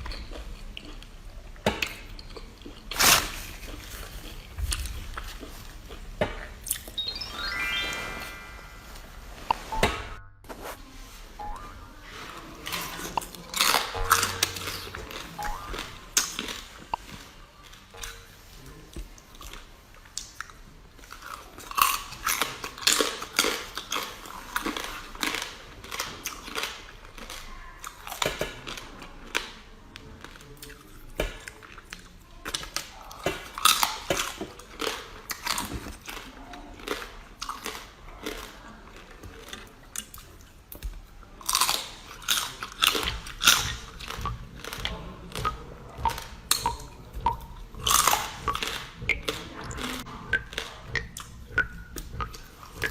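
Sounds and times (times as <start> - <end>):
chewing and crunching food: 0.0 - 7.0, 12.0 - 52.9.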